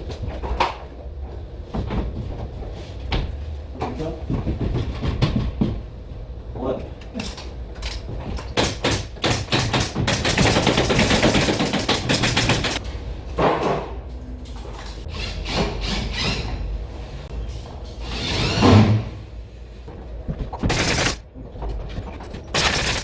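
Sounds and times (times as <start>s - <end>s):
nail gun firing: 8.6s - 12.8s, 20.6s - 21.2s, 22.6s - 23.0s.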